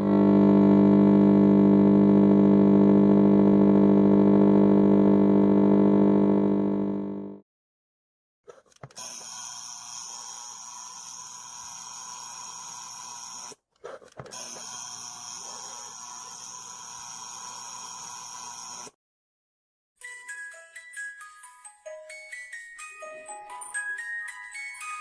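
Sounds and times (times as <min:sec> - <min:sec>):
alarm clock buzzing: 0:09.0 - 0:13.6, 0:14.4 - 0:19.0.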